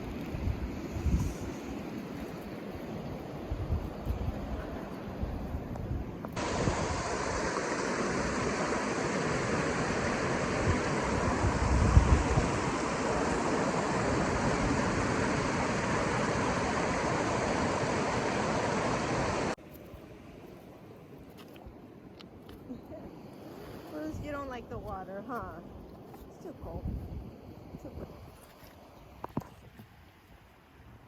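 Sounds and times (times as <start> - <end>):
wind buffeting microphone: 0.0 - 19.6, 26.4 - 28.5
rushing stream water: 6.2 - 19.6.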